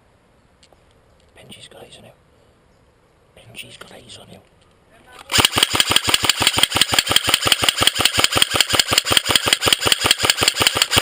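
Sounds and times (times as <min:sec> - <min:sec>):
airsoft rifle full-auto burst: 0:05.3 - 0:11.0.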